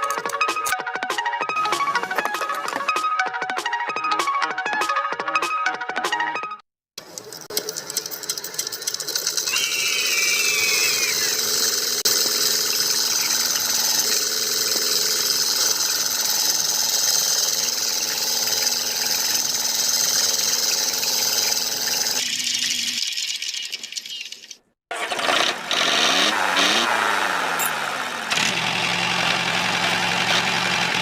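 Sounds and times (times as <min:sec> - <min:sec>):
small motor buzzing: 0:08.6 - 0:22.2.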